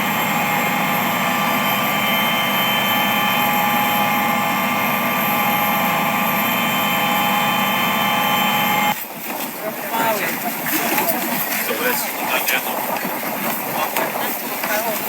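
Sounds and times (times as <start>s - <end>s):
high whining tones: 0.0s - 9.0s
steady engine drone: 0.0s - 15.0s.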